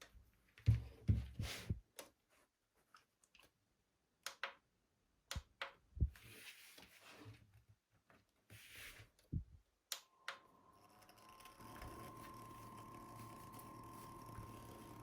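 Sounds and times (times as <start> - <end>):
small electric motor whine: 10.4 - 15.0.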